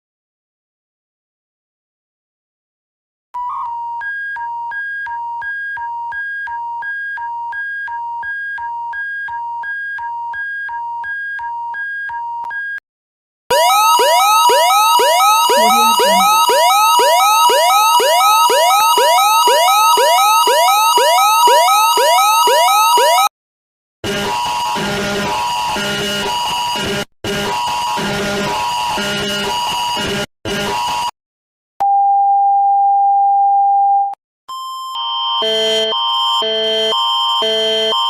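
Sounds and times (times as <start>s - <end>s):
alarm of rising sweeps: 13.5s - 23.3s
two-tone beep: 13.5s - 23.3s
two-tone hi-lo alarm: 13.5s - 23.3s, 34.5s - 38.0s.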